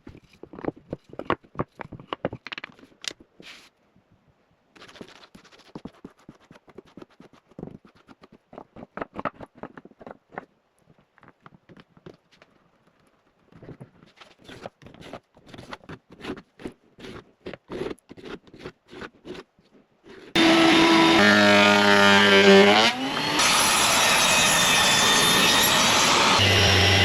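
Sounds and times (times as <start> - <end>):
woodworking power tool running: 20.4 - 27.0.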